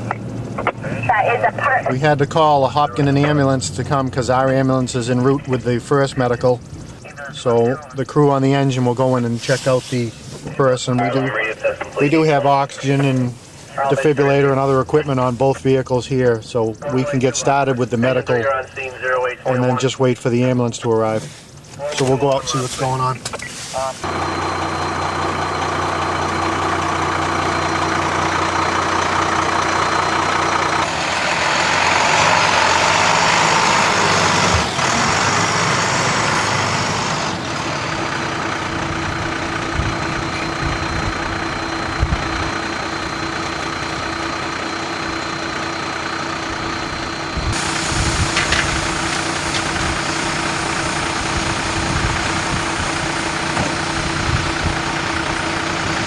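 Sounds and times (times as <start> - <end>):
car engine running: 0.0 - 56.0
road noise: 0.0 - 56.0
rushing hiss: 47.6 - 53.3.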